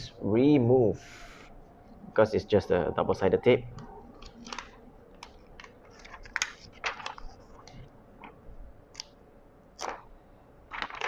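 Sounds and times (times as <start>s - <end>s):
tape peeling off plastic: 9.8s - 10.1s.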